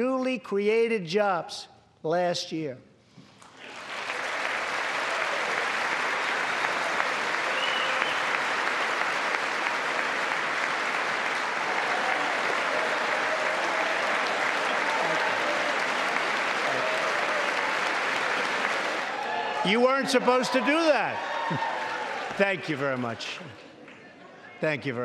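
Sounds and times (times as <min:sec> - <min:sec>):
crowd applauding: 0:03.4 - 0:24.0.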